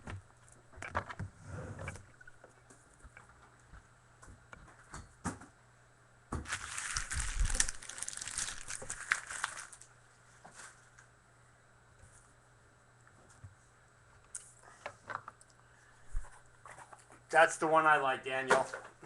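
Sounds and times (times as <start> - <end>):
plastic crinkling: 6.4 - 9.9.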